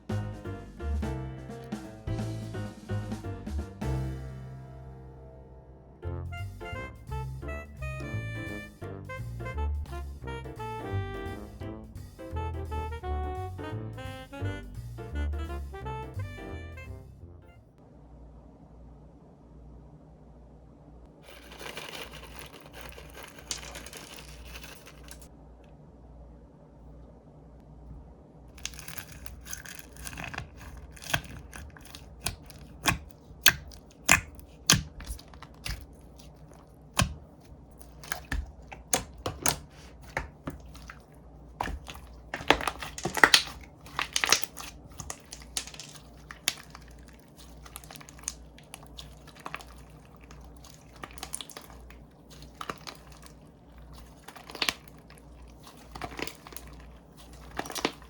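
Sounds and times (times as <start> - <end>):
crinkly slime squishing: 21.2 - 25.3, 28.5 - 58.0
slime popping and clicking: 28.6 - 41.0, 41.6 - 53.4, 54.0 - 58.0.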